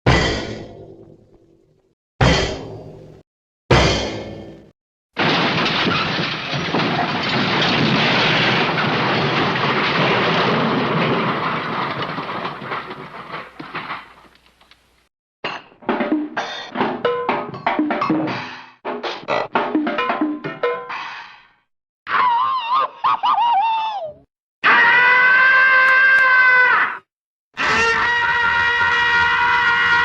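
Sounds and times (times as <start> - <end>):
sharp drum hits: 0.1 - 0.8, 2.2 - 4.7.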